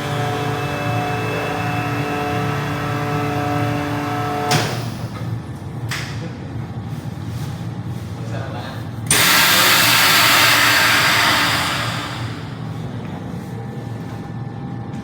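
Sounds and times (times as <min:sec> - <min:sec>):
vacuum pump humming: 0:00.0 - 0:05.3, 0:09.1 - 0:13.1
sharp burst of noise: 0:09.1 - 0:12.7.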